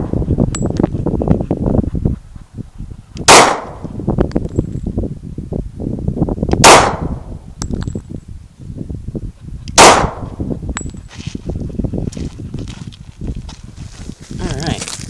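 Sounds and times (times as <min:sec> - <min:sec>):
pistol shots: 0:03.2 - 0:03.8, 0:06.6 - 0:07.2, 0:09.8 - 0:10.3.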